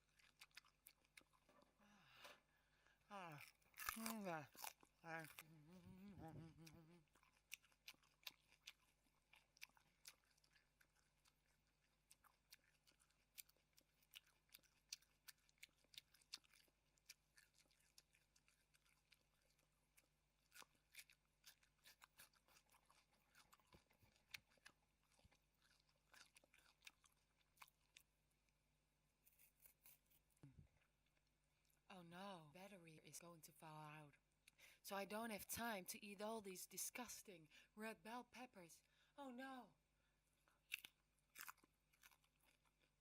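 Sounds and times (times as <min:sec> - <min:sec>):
pepper being chewed: 0:00.0 - 0:02.4, 0:03.2 - 0:28.1, 0:29.2 - 0:31.8, 0:40.5 - 0:43.0.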